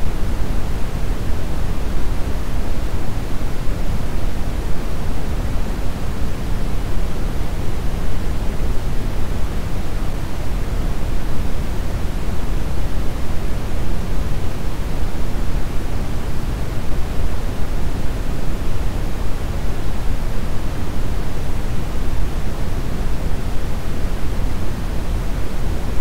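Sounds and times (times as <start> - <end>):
brown noise hiss: 0.0 - 26.0.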